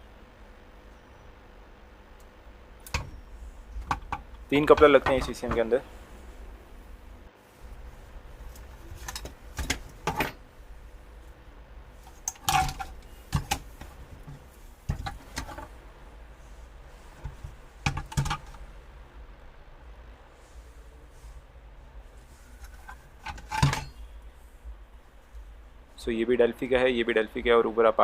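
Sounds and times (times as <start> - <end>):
low steady hum: 0.0 - 28.0
plastic units knocking on workbench: 17.2 - 18.5.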